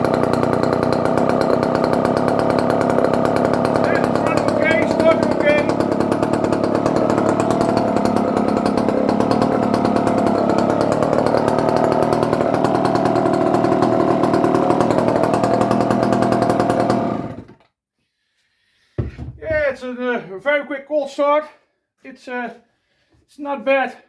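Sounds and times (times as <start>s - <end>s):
chainsaw engine running: 0.0s - 17.6s.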